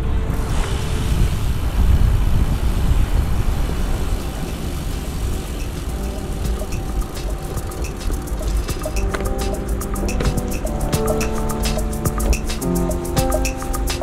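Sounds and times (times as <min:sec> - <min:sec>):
road and tyre rumble: 0:00.0 - 0:10.2
wind rushing over microphone: 0:00.0 - 0:14.0.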